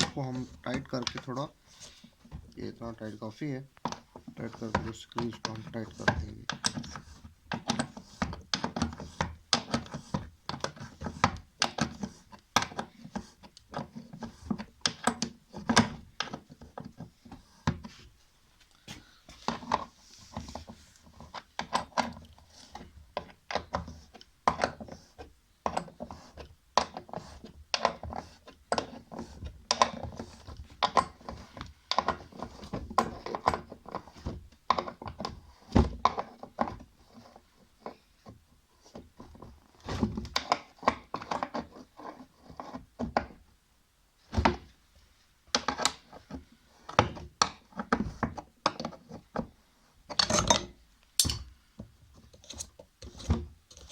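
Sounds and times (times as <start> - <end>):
hand tools clicking and knocking: 3.8 - 17.1, 26.8 - 35.4, 50.1 - 51.6.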